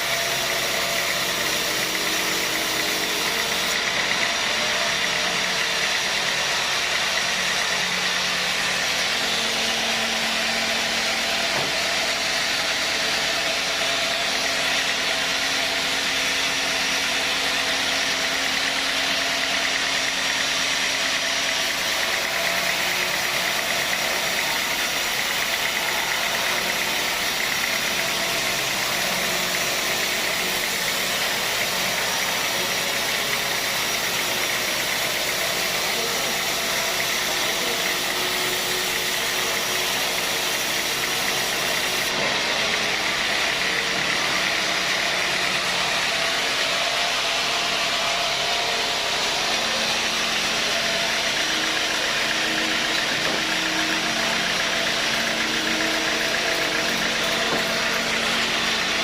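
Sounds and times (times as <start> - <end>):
sawmill machinery running: 0.0 - 59.0.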